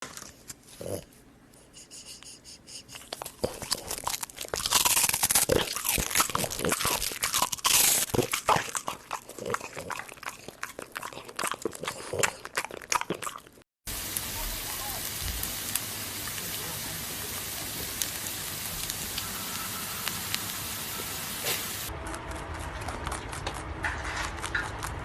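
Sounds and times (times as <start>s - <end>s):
crunching of crisp food: 2.9s - 13.6s, 17.7s - 20.6s, 21.4s - 25.0s.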